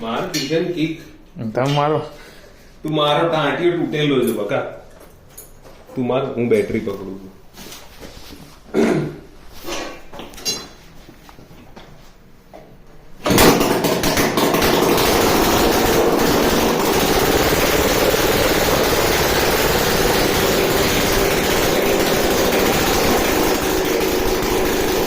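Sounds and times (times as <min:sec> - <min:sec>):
motorcycle kick start: 0:13.2 - 0:25.0
two-stroke engine running: 0:13.2 - 0:25.0.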